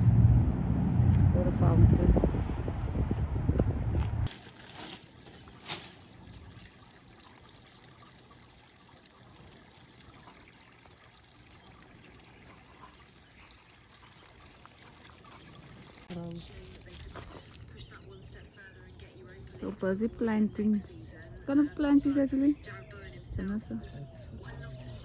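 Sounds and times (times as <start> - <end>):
loud low rumble: 0.0 - 4.3
stream trickling: 4.3 - 17.6.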